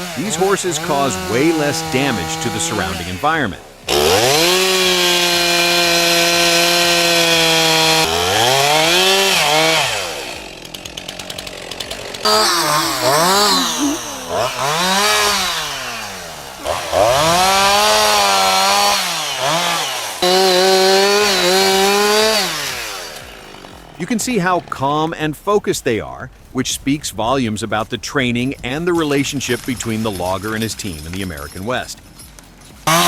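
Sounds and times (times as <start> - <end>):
chainsaw cutting wood: 0.0 - 25.4, 28.4 - 33.0.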